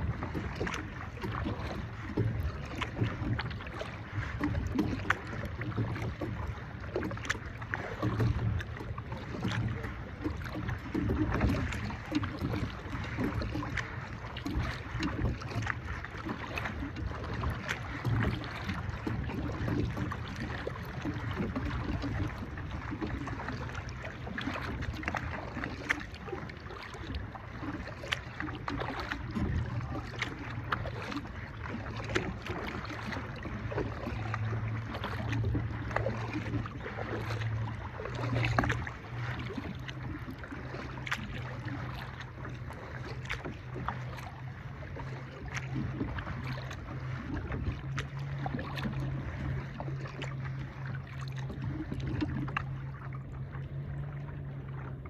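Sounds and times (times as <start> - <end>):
water splashing against kayak: 0.0 - 55.0.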